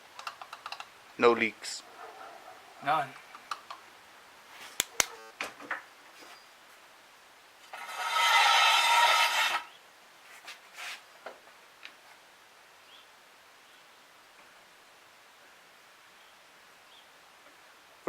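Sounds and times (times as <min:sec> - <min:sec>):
sharp clicks and knocks: 0:00.1 - 0:00.9
loud rasping scrape: 0:07.7 - 0:09.7.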